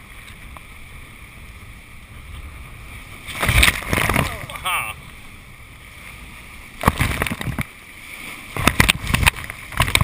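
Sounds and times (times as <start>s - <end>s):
whitewater rushing: 0.0s - 10.0s
loud water splashing: 2.9s - 5.2s, 6.7s - 10.0s.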